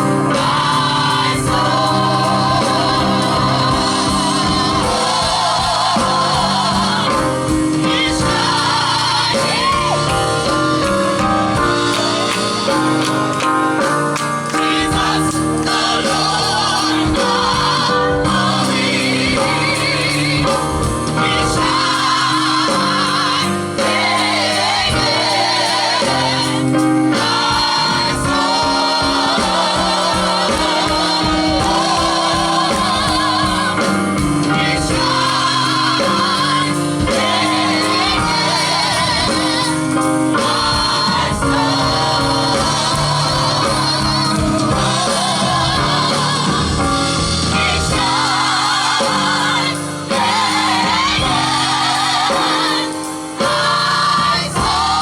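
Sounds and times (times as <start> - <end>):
gospel group singing in harmony: 0.0 - 55.0
instrumental accompaniment: 0.0 - 55.0.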